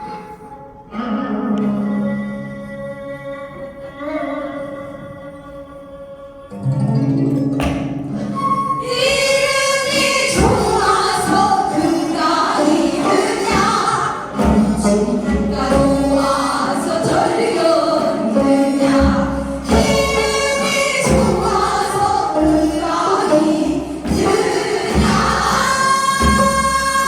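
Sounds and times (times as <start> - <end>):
folk song singing: 0.0 - 27.0
instrumental accompaniment: 6.5 - 27.0.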